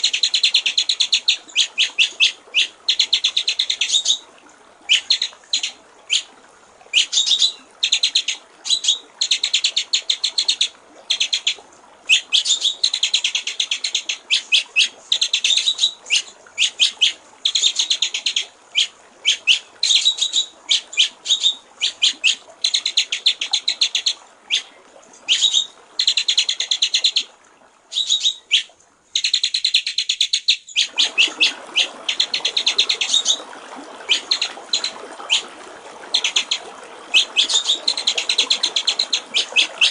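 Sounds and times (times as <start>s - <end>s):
trickling water: 0.0s - 39.9s
songbird singing rattling notes: 27.9s - 33.4s.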